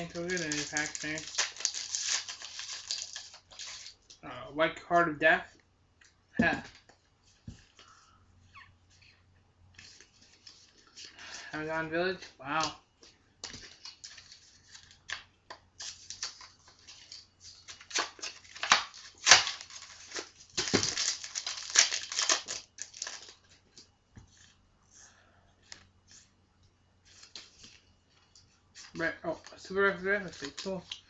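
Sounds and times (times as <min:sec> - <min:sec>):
cards rustling: 0:00.0 - 0:04.2, 0:09.8 - 0:24.6, 0:27.1 - 0:31.0
plastic wrapper tearing and crinkling: 0:00.0 - 0:04.2, 0:15.8 - 0:23.5, 0:29.4 - 0:31.0.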